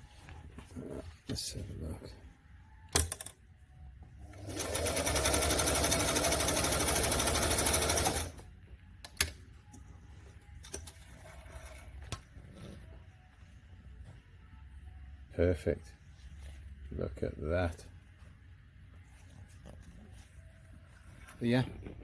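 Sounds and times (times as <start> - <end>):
sewing machine running: 4.3 - 8.4.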